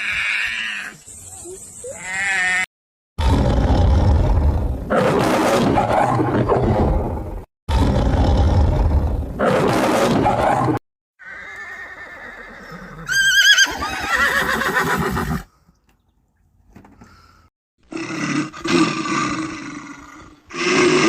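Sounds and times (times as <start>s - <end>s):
loud rough animal roar: 3.2s - 6.8s
horse whinnying: 11.2s - 15.5s.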